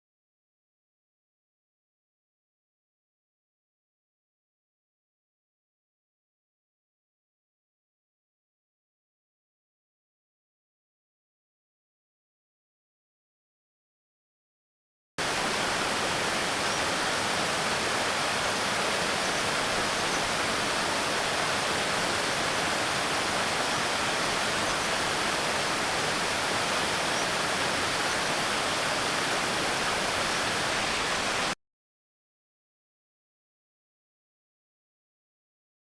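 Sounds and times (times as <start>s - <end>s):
rush of flowing water: 15.2s - 31.6s.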